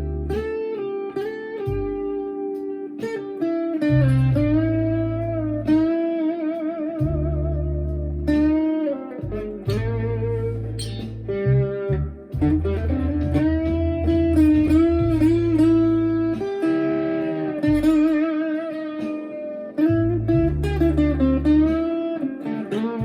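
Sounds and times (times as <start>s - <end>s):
electric guitar lead line: 0.0s - 23.0s.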